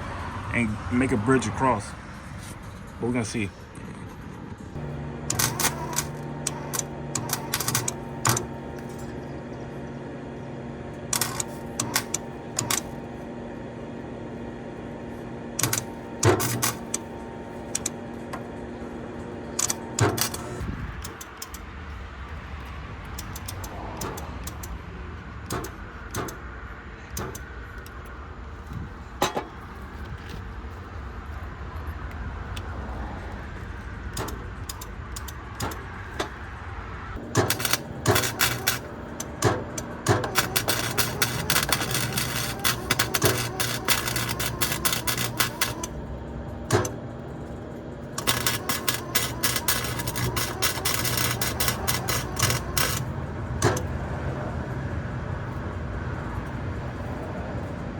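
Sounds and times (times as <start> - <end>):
welder arc crackling: 4.7 - 9.8, 11.0 - 13.2, 14.3 - 30.0, 37.2 - 47.1, 48.1 - 53.9
clicks and knocks: 29.2 - 29.6, 37.2 - 45.9, 48.2 - 53.9.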